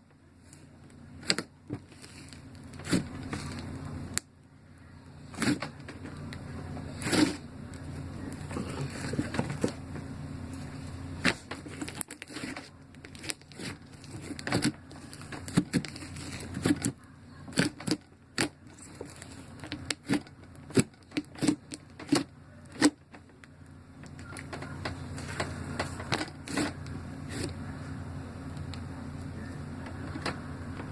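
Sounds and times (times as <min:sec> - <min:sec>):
steady low hum: 0:00.0 - 0:30.9.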